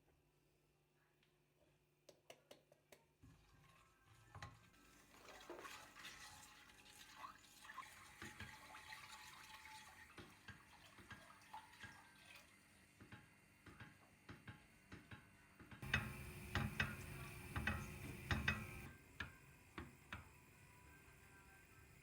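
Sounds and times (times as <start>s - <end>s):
utensils and dishes clattering: 15.8s - 18.9s.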